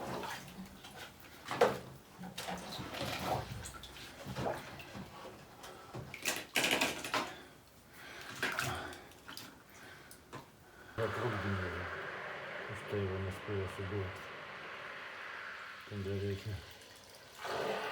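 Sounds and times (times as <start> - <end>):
water splashing and sloshing: 0.0 - 6.4, 7.3 - 10.6.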